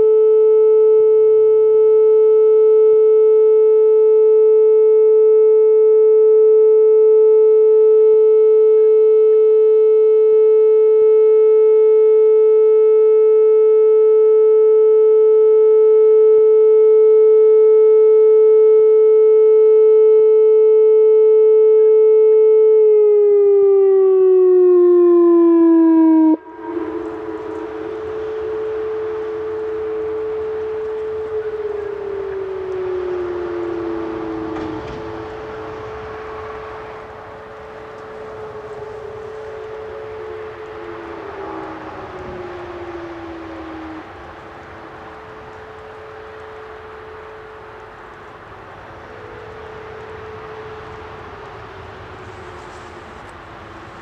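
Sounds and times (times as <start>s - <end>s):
civil defense siren alert tone: 0.0s - 54.0s
broad rushing noise: 26.4s - 54.0s.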